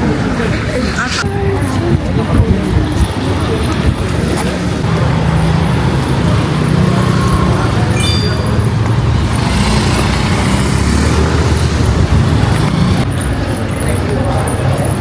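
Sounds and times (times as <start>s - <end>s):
road traffic noise: 0.0s - 15.0s
brief high chirp: 8.0s - 8.7s.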